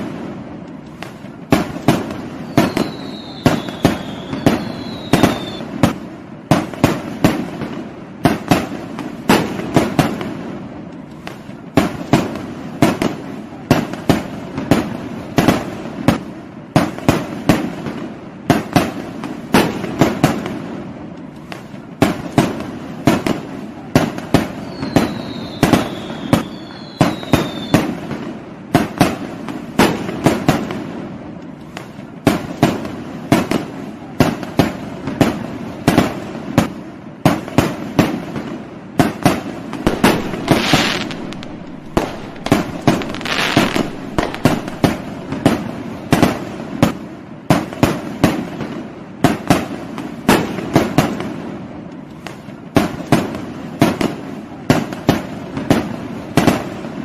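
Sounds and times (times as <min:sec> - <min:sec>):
fireworks bangs and crackles: 0:00.0 - 0:57.0
short falling whistles: 0:02.4 - 0:05.6, 0:24.6 - 0:27.8.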